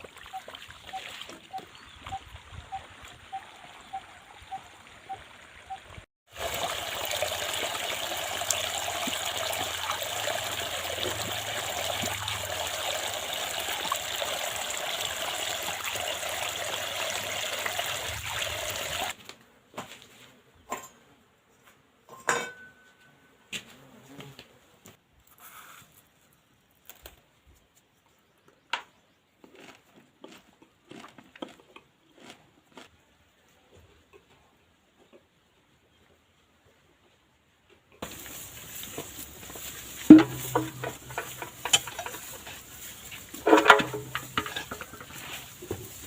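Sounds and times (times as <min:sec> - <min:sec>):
irrigation water pouring: 0:00.0 - 0:01.9, 0:06.3 - 0:19.2, 0:38.0 - 0:46.0.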